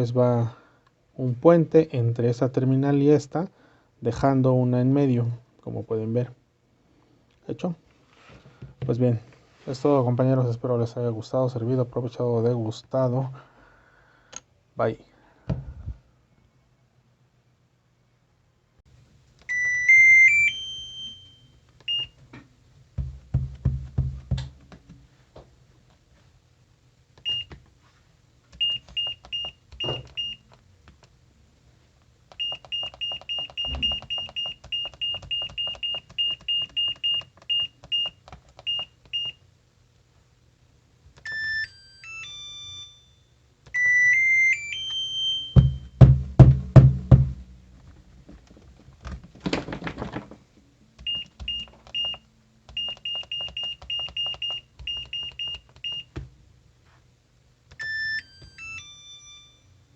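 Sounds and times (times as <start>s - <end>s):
stepped tone melody: 44.2s - 47.8s
loud low thumps: 45.6s - 47.8s.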